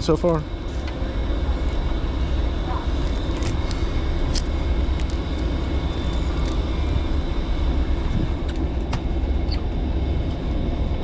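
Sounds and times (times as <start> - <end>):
boat engine rumble and hiss: 0.0 - 11.0.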